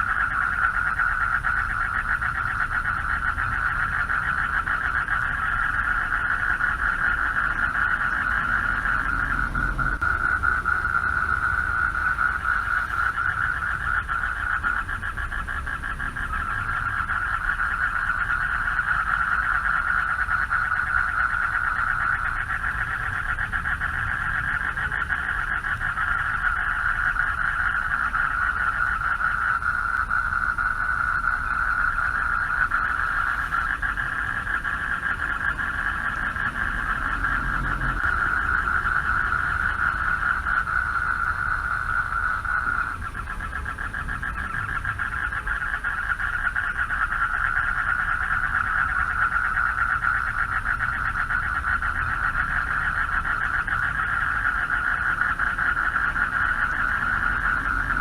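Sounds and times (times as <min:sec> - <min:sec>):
frogs calling: 0:00.0 - 0:58.0
low rumble: 0:03.3 - 0:14.0.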